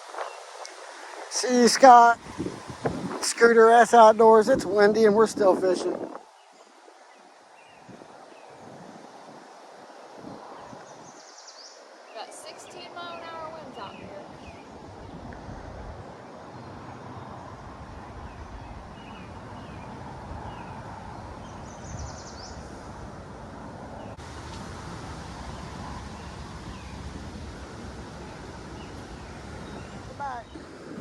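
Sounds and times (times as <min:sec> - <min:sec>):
wind buffeting microphone: 0:00.0 - 0:31.0.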